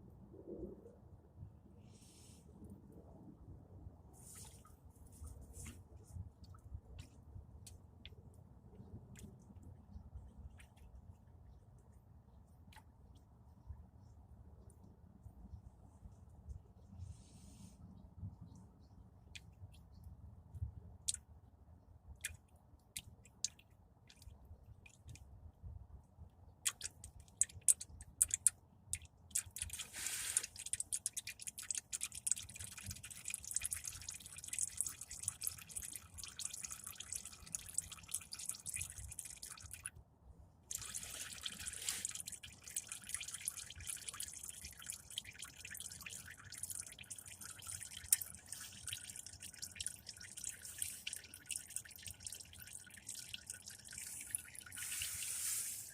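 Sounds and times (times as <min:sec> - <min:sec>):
engine oil dripping: 0:26.6 - 0:40.0, 0:40.7 - 0:55.0
oil pouring in a stream: 0:26.6 - 0:40.0, 0:40.6 - 0:55.9.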